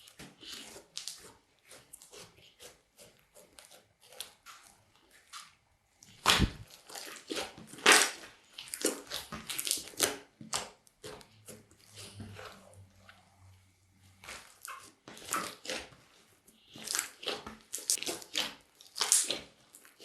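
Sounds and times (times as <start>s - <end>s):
slime squishing and popping: 6.2s - 10.8s, 16.8s - 20.0s.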